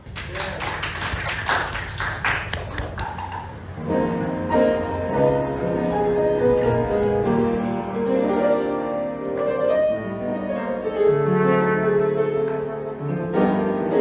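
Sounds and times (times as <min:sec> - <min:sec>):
piano music: 0:03.7 - 0:14.0.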